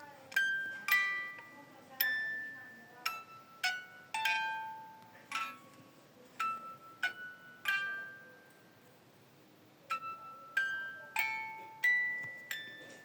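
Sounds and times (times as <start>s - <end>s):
bell-like mallet melody: 6.4s - 8.8s.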